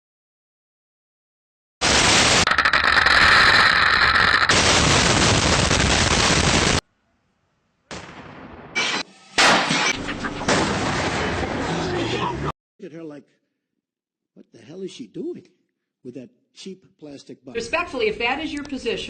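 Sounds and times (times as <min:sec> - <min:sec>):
explosions: 0:01.8 - 0:06.8, 0:07.9 - 0:11.9
gunfire: 0:01.8 - 0:06.8, 0:07.9 - 0:11.6.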